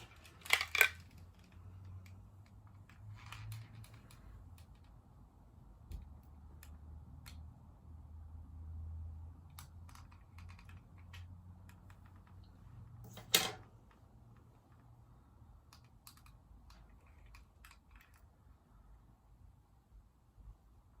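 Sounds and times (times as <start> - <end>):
hair crimper clicking and rustling: 0.0 - 4.9
low steady hum: 0.0 - 21.0.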